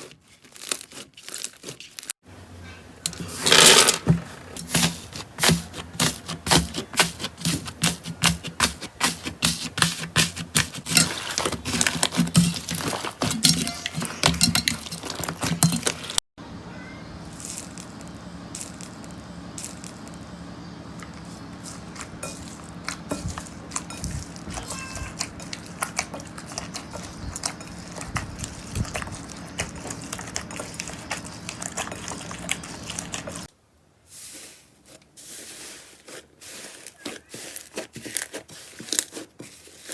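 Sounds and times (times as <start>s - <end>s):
steady low hum: 11.6s - 33.5s.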